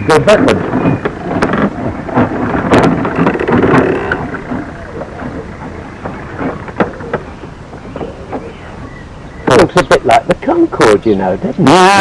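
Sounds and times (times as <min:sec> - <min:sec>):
wheels rumbling over uneven ground: 0:00.0 - 0:12.0.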